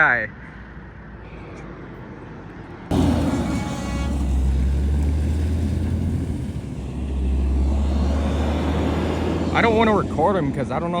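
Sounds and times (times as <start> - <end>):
truck passing at speed: 2.9 - 10.9.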